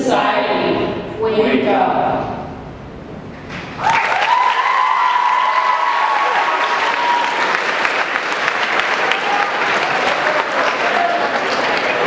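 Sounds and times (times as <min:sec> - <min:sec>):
high held whoop: 0:03.8 - 0:07.6
audience applauding: 0:03.8 - 0:12.0.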